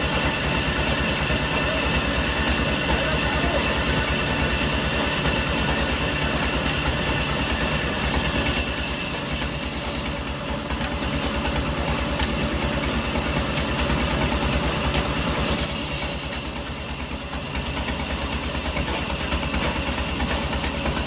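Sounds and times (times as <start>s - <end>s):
sawmill machinery throbbing: 0.0s - 21.0s
high whine: 7.4s - 13.4s, 14.4s - 21.0s.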